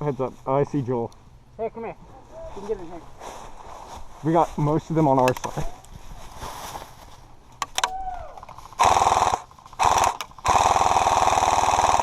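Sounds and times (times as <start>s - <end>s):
airsoft gun firing bursts: 8.7s - 12.0s.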